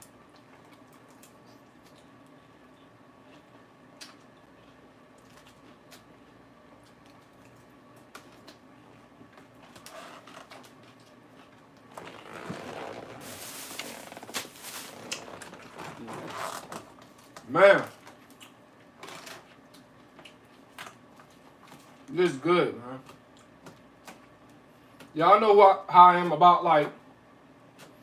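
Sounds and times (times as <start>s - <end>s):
lettuce crunched and chewed: 0.0s - 22.2s.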